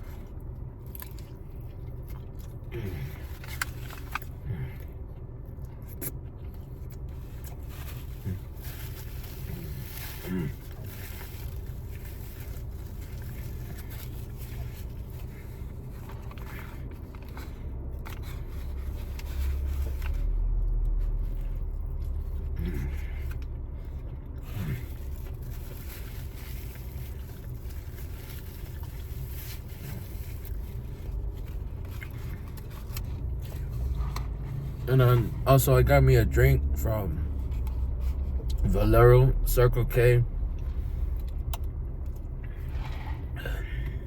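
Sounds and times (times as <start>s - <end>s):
person chewing: 0.0s - 34.9s
low rumble: 0.0s - 44.0s.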